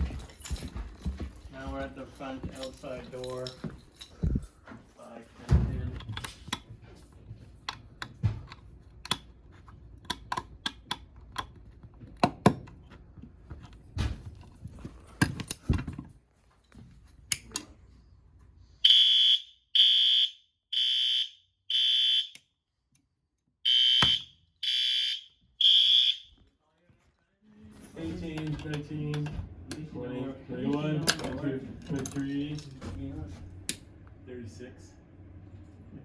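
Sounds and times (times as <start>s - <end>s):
handling clicks and knocks: 0.0s - 17.7s, 28.0s - 29.8s, 31.0s - 33.9s
fire alarm horn blasts: 18.8s - 22.4s, 23.6s - 26.4s.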